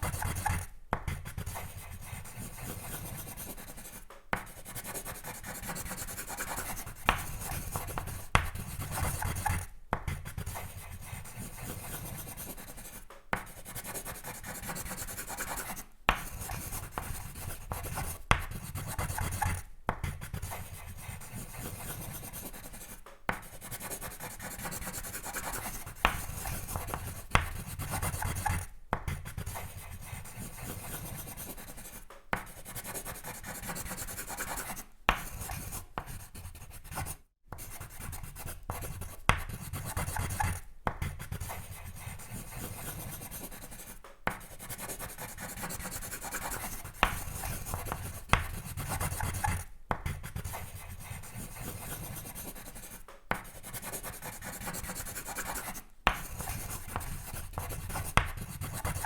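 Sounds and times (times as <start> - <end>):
pencil sketching on paper: 0.0 - 59.0
pencil taps: 0.1 - 2.2, 2.8 - 20.2, 22.2 - 29.6, 31.4 - 32.6, 38.7 - 41.6, 43.1 - 44.6, 45.2 - 50.8, 52.6 - 53.7, 55.4 - 58.8.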